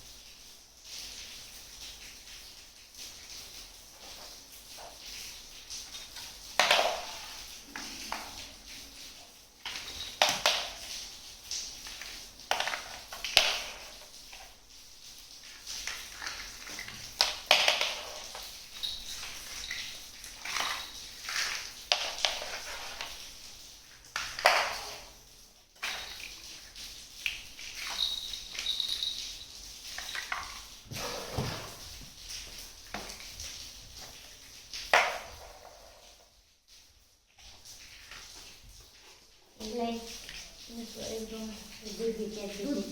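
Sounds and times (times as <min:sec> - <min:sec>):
toy kitchenware clicks and clinks: 0:06.6 - 0:07.3, 0:09.7 - 0:10.8, 0:16.2 - 0:23.1, 0:25.8 - 0:26.4, 0:27.7 - 0:30.7.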